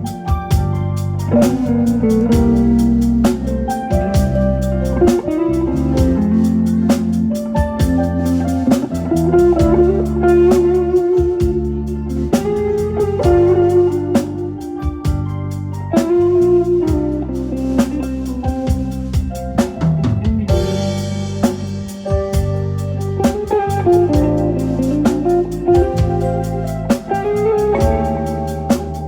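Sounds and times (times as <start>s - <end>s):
bass: 0.0s - 29.0s
guitar melody: 0.0s - 29.0s
keyboard chords: 0.0s - 29.0s
steady drum beat: 0.0s - 29.0s.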